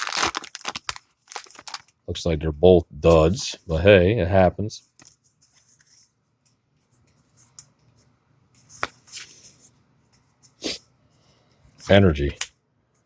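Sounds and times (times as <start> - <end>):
cards rustling: 0.0 - 1.9, 6.8 - 10.6.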